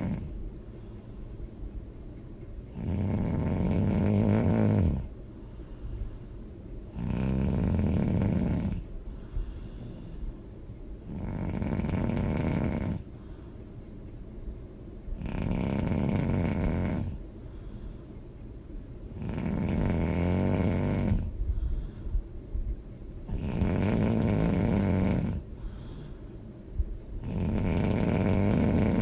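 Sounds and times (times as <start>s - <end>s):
quiet breaths: 0.0s - 29.0s
person snoring loudly: 2.8s - 5.1s, 7.0s - 8.8s, 11.1s - 13.0s, 15.2s - 17.2s, 19.2s - 21.3s, 23.3s - 25.4s, 27.2s - 29.0s.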